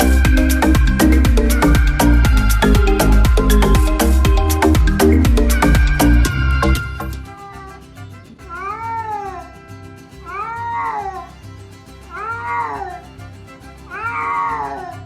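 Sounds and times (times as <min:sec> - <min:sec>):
background music with beat: 0:00.0 - 0:07.4
cat meowing: 0:06.3 - 0:09.6, 0:10.2 - 0:11.4, 0:12.1 - 0:13.2, 0:13.8 - 0:15.0.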